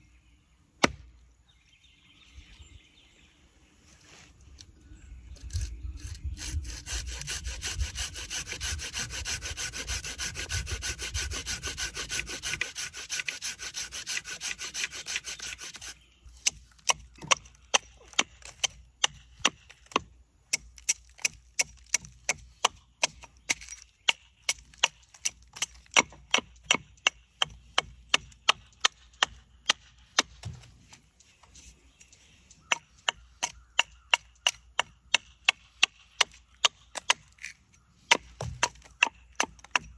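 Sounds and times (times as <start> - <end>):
axe chopping wood: 0.8 - 1.1, 16.4 - 30.6, 32.7 - 39.9
hand saw rasping wood: 5.5 - 17.5, 38.1 - 39.9.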